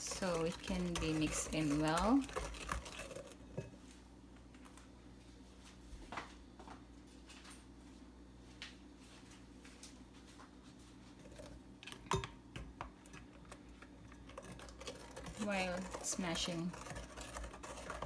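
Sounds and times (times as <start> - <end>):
spatula scraping and tapping a bowl: 0.0 - 3.8
low steady hum: 0.0 - 18.0.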